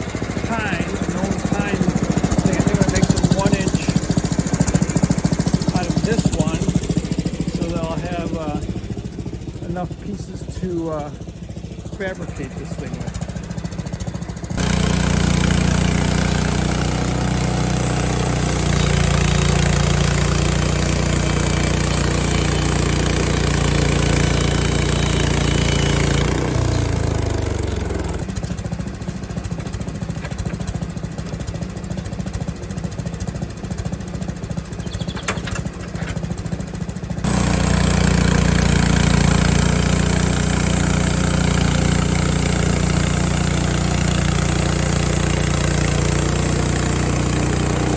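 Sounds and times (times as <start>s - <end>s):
sawmill gas engine: 0.0s - 47.9s.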